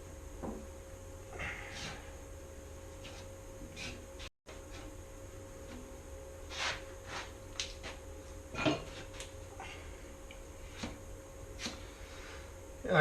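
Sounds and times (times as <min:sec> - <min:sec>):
faint steady hum: 0:00.0 - 0:13.0
spreader scraping filler: 0:03.0 - 0:05.0.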